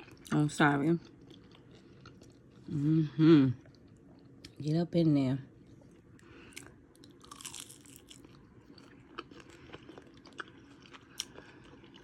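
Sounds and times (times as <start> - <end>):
person chewing crispy food: 1.0 - 2.7, 5.7 - 12.0.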